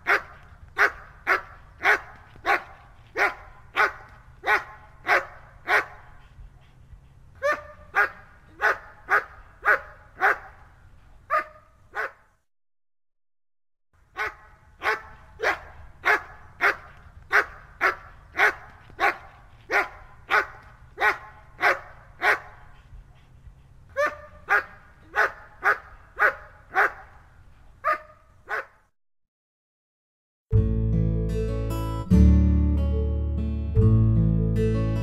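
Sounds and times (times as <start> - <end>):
dog barking: 0.0 - 6.3, 7.4 - 12.3, 14.1 - 22.8, 23.9 - 28.9.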